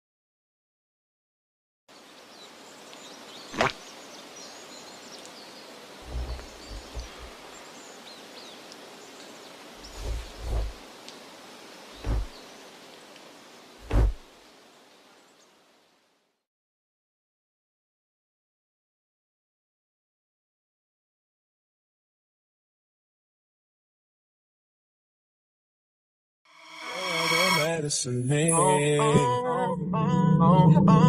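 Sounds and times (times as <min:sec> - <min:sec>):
outdoor background hiss: 0:01.9 - 0:16.5
dull thumps: 0:06.0 - 0:07.4, 0:09.8 - 0:10.8, 0:12.0 - 0:12.3, 0:13.8 - 0:14.2.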